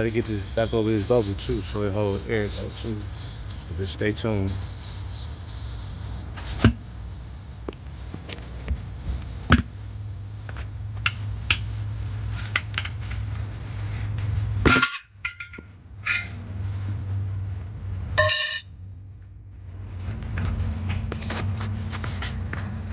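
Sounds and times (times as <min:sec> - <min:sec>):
steady low hum: 0:00.0 - 0:22.9
pry tool clinking on wheel rim: 0:18.2 - 0:18.6.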